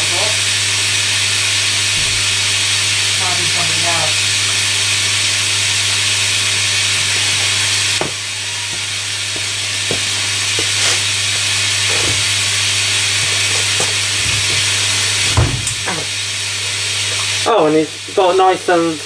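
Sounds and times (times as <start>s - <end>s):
washing machine water rushing: 0.0s - 19.0s
soft knocks from drum: 13.2s - 16.0s.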